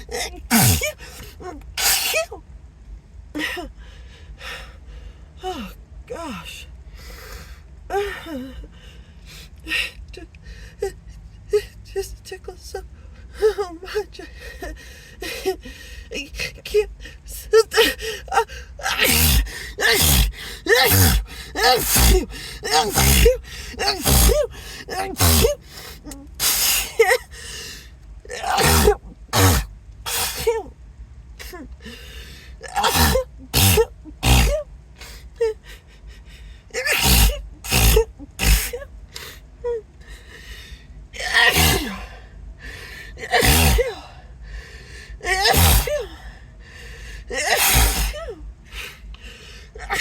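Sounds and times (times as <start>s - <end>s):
person sneezing: 0.0s - 2.4s, 17.8s - 27.5s, 28.3s - 30.7s, 32.6s - 34.6s, 36.8s - 39.3s, 41.2s - 42.2s, 43.2s - 44.1s, 45.2s - 46.2s, 47.3s - 48.4s
gasping breaths: 14.2s - 30.6s, 31.7s - 50.0s.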